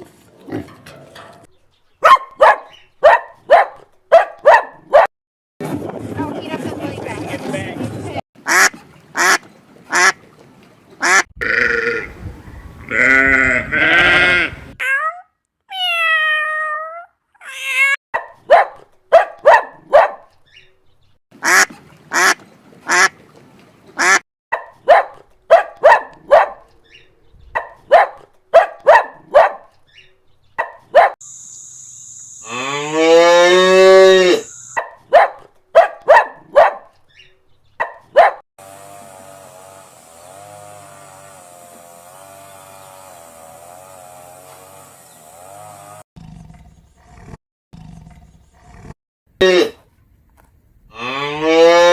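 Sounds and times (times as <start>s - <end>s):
ducks quacking: 8.4s - 10.2s, 11.0s - 14.8s, 21.4s - 23.2s, 24.0s - 24.2s
cow mooing: 11.4s - 12.2s, 12.8s - 14.8s, 32.4s - 34.5s, 50.9s - 51.9s.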